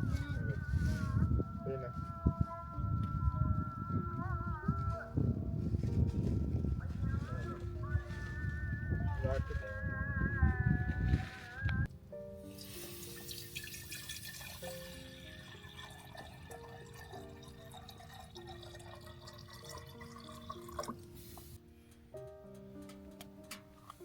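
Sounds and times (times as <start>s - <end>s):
soft background music: 0.0s - 24.0s
running water hissing: 12.5s - 15.7s.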